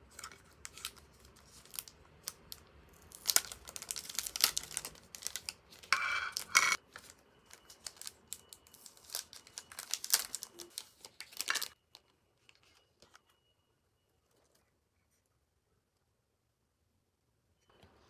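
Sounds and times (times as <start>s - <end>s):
packaging crinkling and rustling: 0.0s - 13.4s
packaging ripping: 0.1s - 11.8s.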